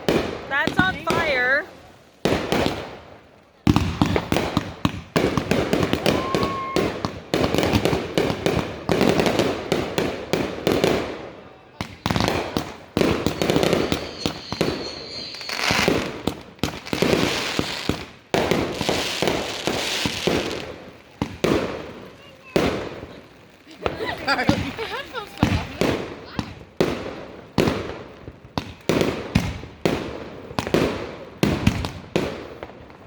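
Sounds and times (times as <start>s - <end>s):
fireworks whistling: 0.0s - 2.9s, 3.8s - 11.2s, 11.9s - 27.1s
fireworks bangs: 0.0s - 33.0s
fireworks crackling: 0.0s - 33.0s.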